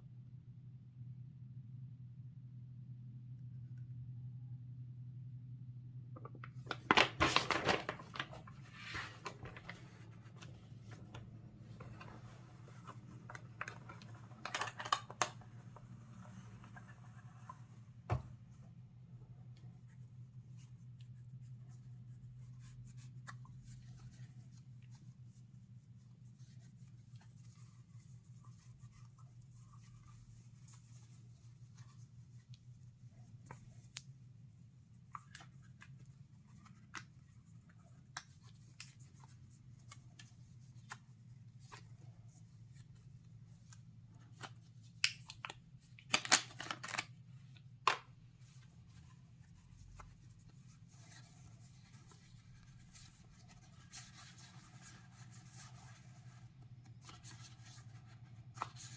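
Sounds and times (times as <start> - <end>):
cards clicking and rustling: 6.5 - 9.9, 44.3 - 47.2
loud snaps and rustling: 45.0 - 47.1.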